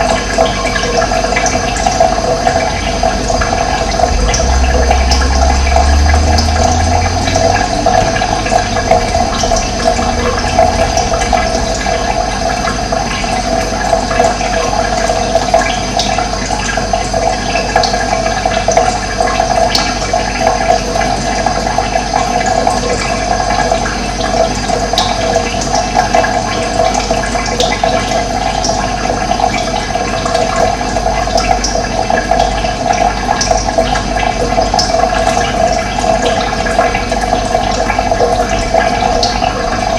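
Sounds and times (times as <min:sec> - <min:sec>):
running water rushing: 0:00.0 - 0:39.9
low rumble: 0:02.5 - 0:14.2.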